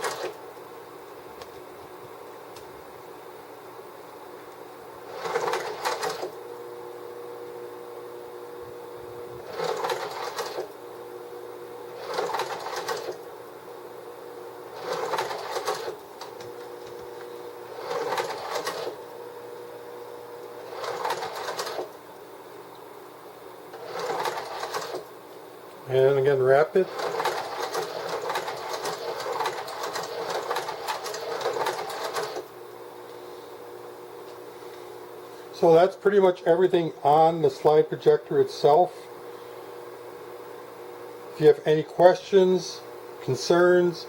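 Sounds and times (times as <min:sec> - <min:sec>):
projector running hum: 0:00.0 - 0:44.0
slide projector slide-change clatter: 0:26.8 - 0:32.5.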